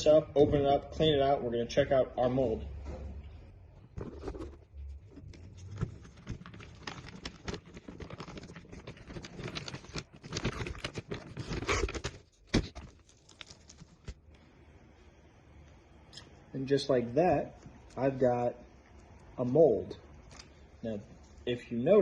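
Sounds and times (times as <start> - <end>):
silicone mold crackling and peeling: 4.2 - 14.4.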